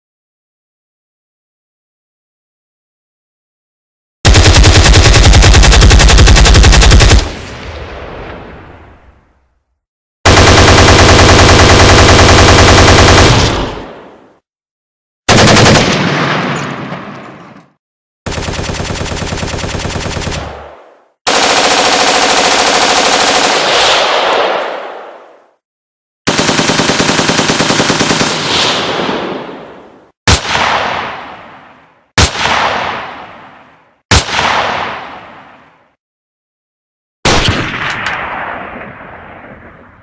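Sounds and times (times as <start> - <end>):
automatic machine-gun fire: 4.2 - 7.5, 10.2 - 14.0, 15.3 - 16.4, 18.3 - 24.0, 26.3 - 28.6.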